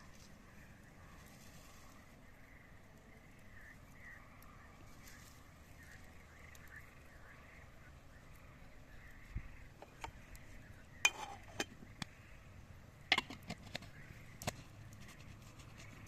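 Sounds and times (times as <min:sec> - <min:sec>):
soft chirping calls: 0:02.2 - 0:11.0.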